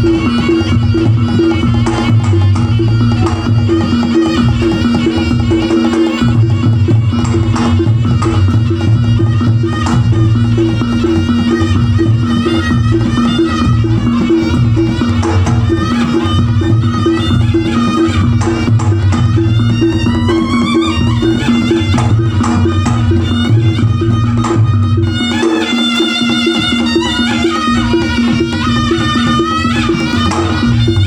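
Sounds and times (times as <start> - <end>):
hand drums beating: 0.0 - 31.0
high wavering melody: 0.0 - 31.0.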